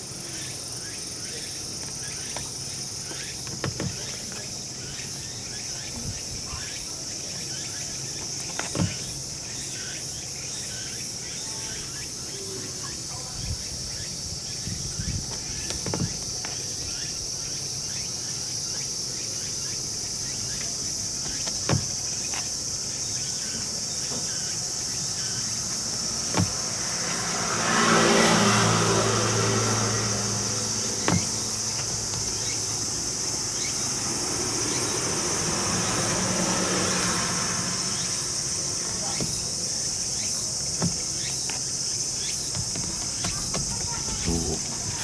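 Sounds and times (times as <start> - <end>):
insects chirring: 0.0 - 45.0.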